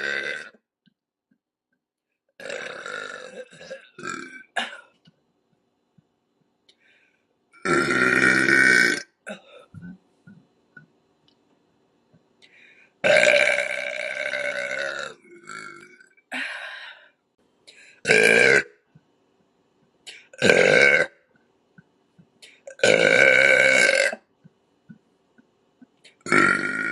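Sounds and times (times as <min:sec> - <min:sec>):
woman burping: 0:00.0 - 0:00.6, 0:02.4 - 0:05.0, 0:07.6 - 0:10.0, 0:13.0 - 0:16.5, 0:18.0 - 0:18.8, 0:20.1 - 0:21.2, 0:22.6 - 0:24.3, 0:26.2 - 0:26.9.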